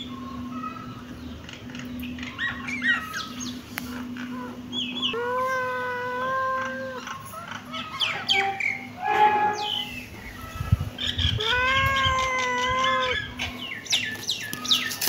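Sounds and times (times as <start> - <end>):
kittens meowing: 4.3 - 13.6.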